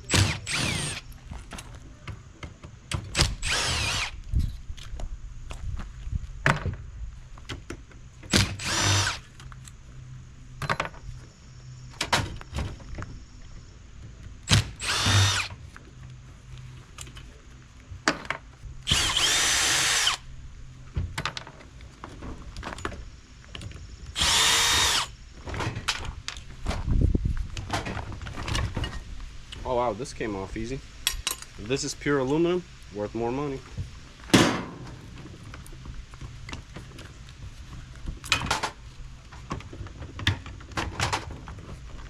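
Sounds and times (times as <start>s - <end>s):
cordless drill whining: 0.1s - 1.0s, 3.2s - 4.2s, 8.4s - 9.2s, 14.5s - 15.5s, 18.9s - 20.2s, 24.2s - 25.2s.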